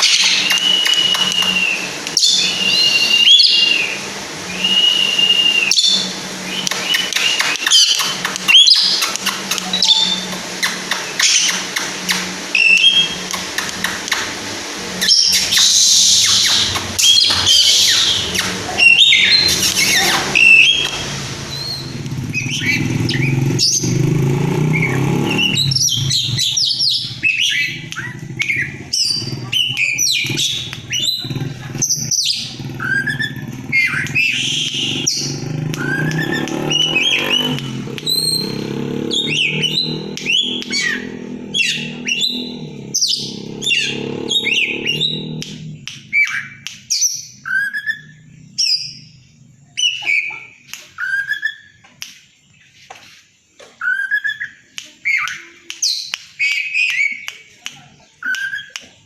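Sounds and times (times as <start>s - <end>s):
bird singing chirps and whistles: 0.0s - 14.0s, 15.0s - 51.8s, 53.8s - 57.5s, 58.1s - 58.8s
low vehicle-like rumble: 8.3s - 49.9s.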